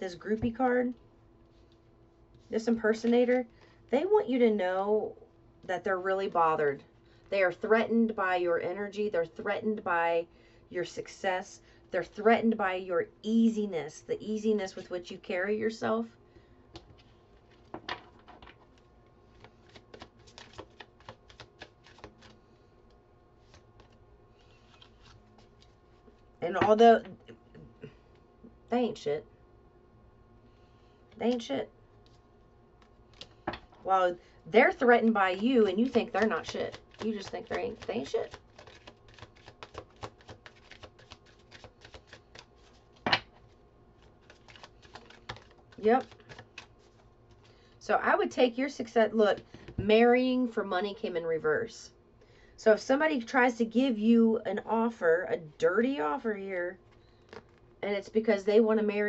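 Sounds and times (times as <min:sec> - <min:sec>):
cards being shuffled: 0:16.7 - 0:25.8, 0:31.1 - 0:33.6, 0:34.7 - 0:47.5, 0:56.9 - 0:57.7.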